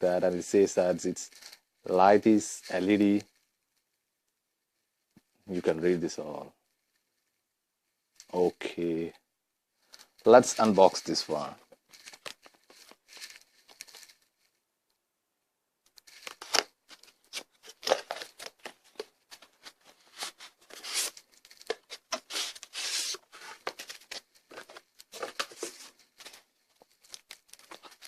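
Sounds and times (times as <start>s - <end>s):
packaging rustling and tearing: 9.9s - 14.4s, 15.9s - 28.0s.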